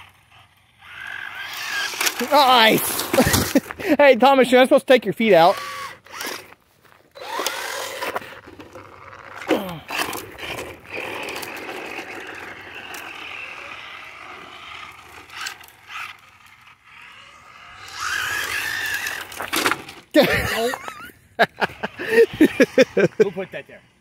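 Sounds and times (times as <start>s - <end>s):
electric motor whining: 0.0s - 3.6s, 5.4s - 24.0s
tyres scrabbling over gravel: 0.0s - 4.2s, 5.2s - 23.7s.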